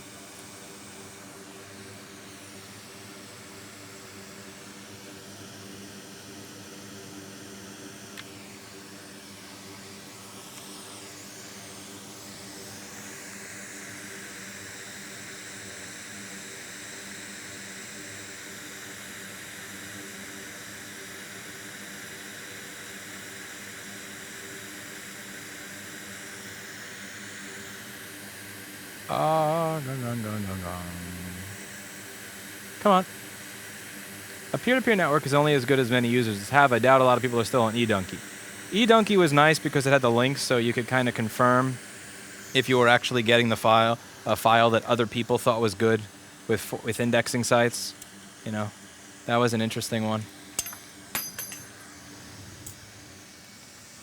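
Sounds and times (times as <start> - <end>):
fan whirring hiss: 0.0 - 54.0
low electrical hum: 28.6 - 31.7, 32.7 - 54.0.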